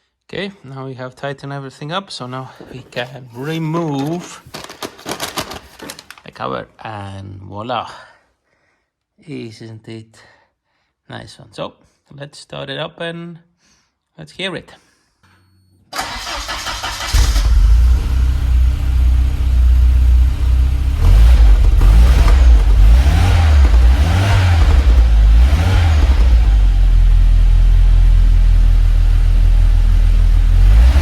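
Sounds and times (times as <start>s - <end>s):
car engine starting: 16.0s - 31.0s
engine revving: 16.1s - 29.1s, 30.1s - 31.0s
car engine idling loudly: 17.5s - 30.5s.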